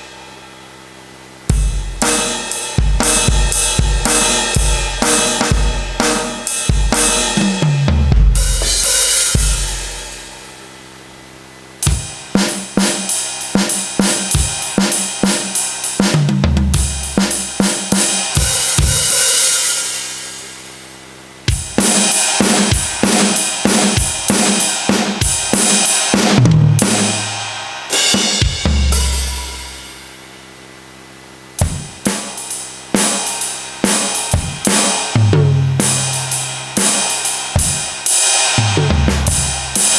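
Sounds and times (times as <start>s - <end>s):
crash cymbal ringing: 0.0s - 16.0s, 16.8s - 26.2s, 26.8s - 30.8s
electronic drum kit sounds: 0.0s - 39.9s.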